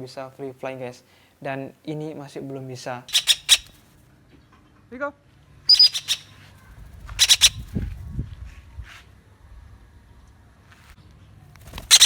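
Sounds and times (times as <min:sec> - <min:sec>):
parakeet squawking: 0:03.1 - 0:03.7, 0:05.7 - 0:06.3, 0:07.1 - 0:07.7.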